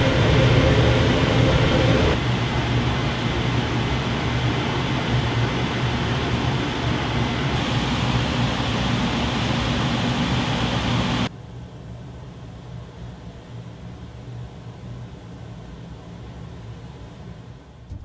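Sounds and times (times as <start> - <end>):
range hood fan rushing air: 0.0 - 11.3, 17.7 - 18.0.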